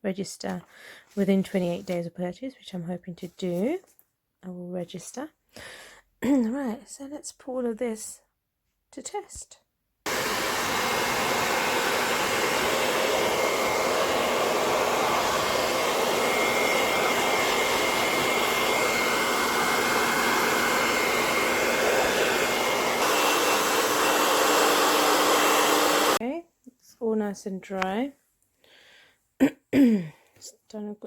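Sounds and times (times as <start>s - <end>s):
hair dryer running: 10.1s - 26.2s.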